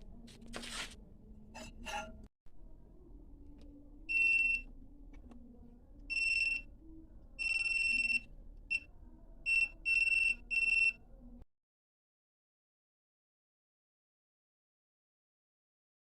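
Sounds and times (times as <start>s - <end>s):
multimeter continuity beeps: 4.1s - 4.7s, 6.1s - 6.7s, 7.4s - 8.9s, 9.5s - 11.0s.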